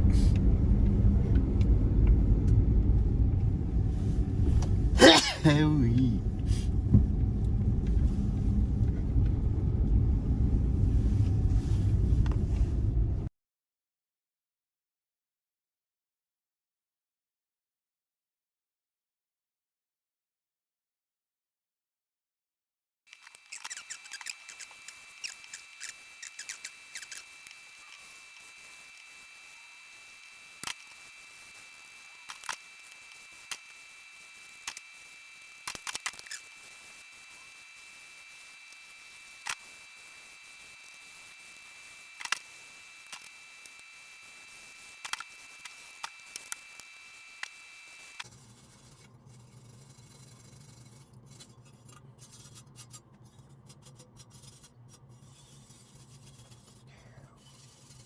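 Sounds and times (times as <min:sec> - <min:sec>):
car driving rumble from inside: 0:00.0 - 0:13.3
faint high-pitched hum: 0:00.0 - 0:13.3.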